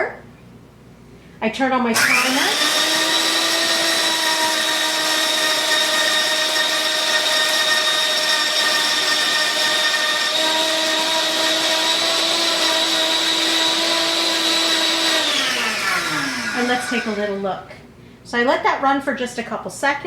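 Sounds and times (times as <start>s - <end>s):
grain mill motor whining: 2.0s - 17.6s.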